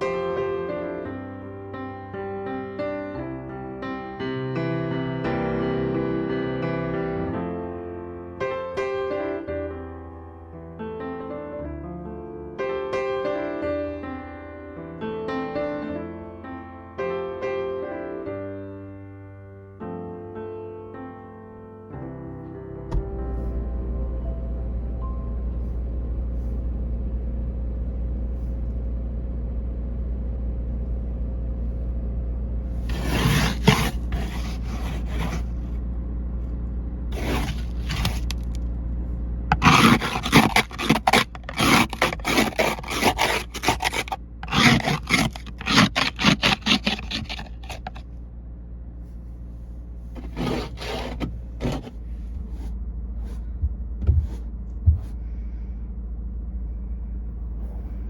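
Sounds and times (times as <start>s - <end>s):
snow and ice scraping: 32.8s - 35.8s, 37.1s - 38.6s, 39.5s - 48.0s, 50.2s - 52.0s
low rumble: 51.4s - 58.0s.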